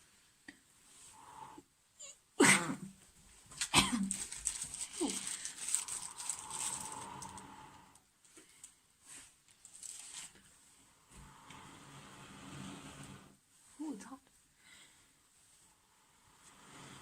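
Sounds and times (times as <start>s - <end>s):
person blowing on ember: 5.0s - 8.0s.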